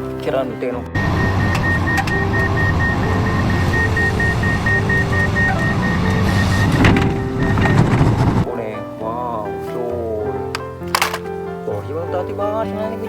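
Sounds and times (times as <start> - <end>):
diesel engine running: 1.0 - 8.5
warning alarm beeps: 1.0 - 8.5.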